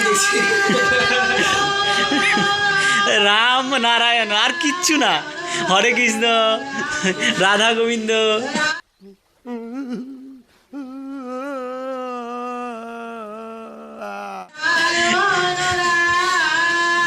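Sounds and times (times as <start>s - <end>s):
fuller group singing: 0.0s - 8.8s, 14.5s - 17.0s.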